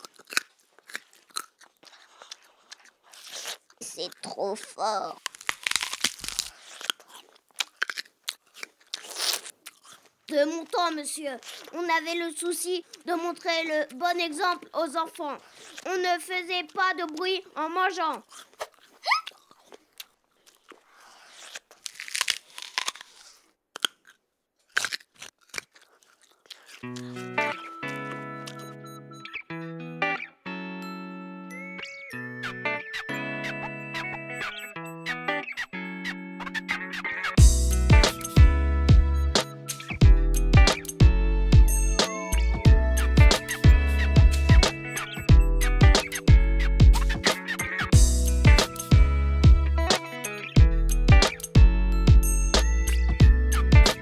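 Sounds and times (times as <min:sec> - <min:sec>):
chewing and crunching: 0:00.0 - 0:28.7, 0:42.4 - 0:48.9
mouth smacks: 0:45.8 - 0:48.0.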